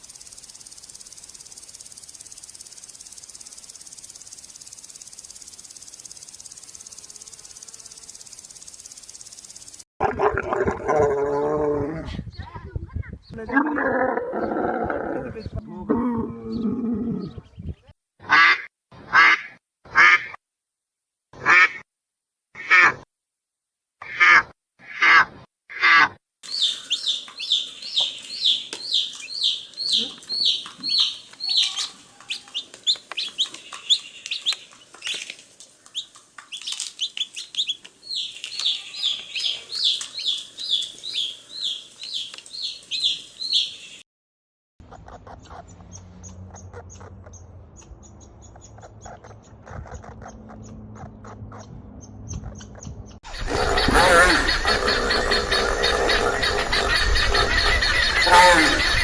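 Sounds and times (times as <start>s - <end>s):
bird chirping: 0.0s - 9.8s, 26.4s - 44.0s, 44.8s - 59.0s
faint fast ticking: 0.0s - 9.8s.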